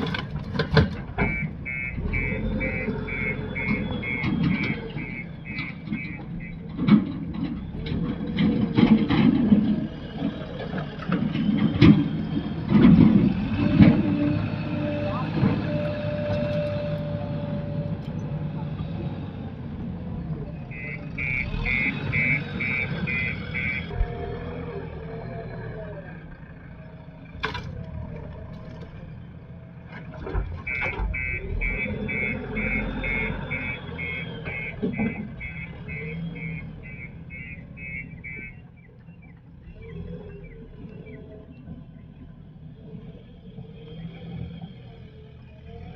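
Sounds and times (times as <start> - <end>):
diesel engine running unevenly: 0.0 - 45.9
reversing alarm beeping: 1.2 - 6.8, 20.6 - 24.0, 30.7 - 38.8.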